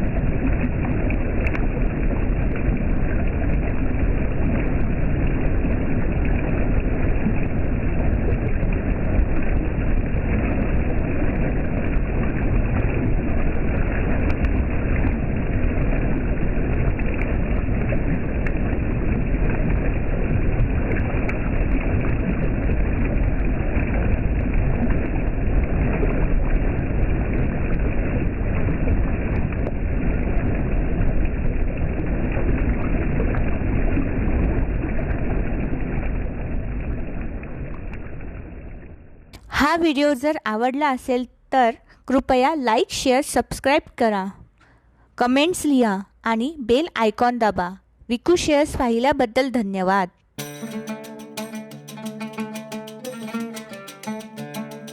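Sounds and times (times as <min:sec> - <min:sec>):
water rushing over stones: 0:00.0 - 0:31.3.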